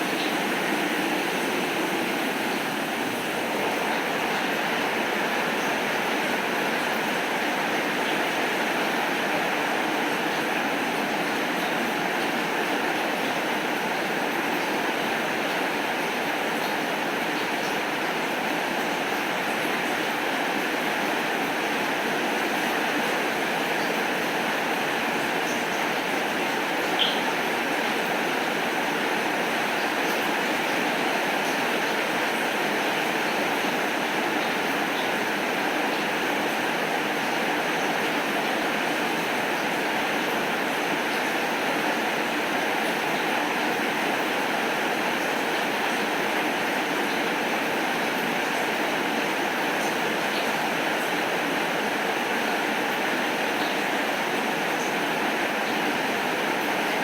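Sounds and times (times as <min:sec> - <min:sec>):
heavy rain hissing: 0:00.0 - 0:08.0.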